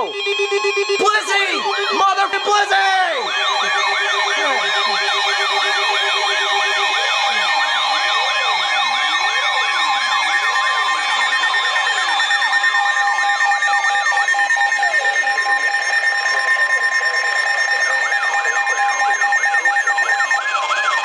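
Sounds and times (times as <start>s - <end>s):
steady alert tones: 0.0s - 7.4s
slow wailing siren tone: 0.0s - 21.0s.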